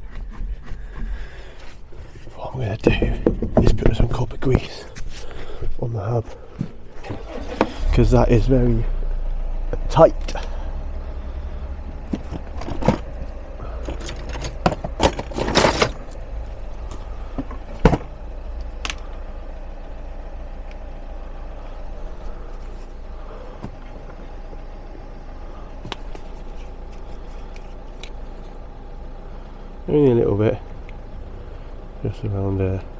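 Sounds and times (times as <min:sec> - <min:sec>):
steady low hum: 0:00.0 - 0:32.9
metal tools clinking and rattling: 0:12.1 - 0:18.1, 0:25.8 - 0:28.6.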